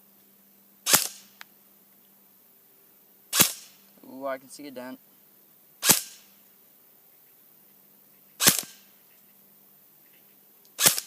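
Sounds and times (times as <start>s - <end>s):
airsoft rifle shots: 0.8s - 1.4s, 3.3s - 3.8s, 5.8s - 6.3s, 8.4s - 8.9s, 10.8s - 11.0s.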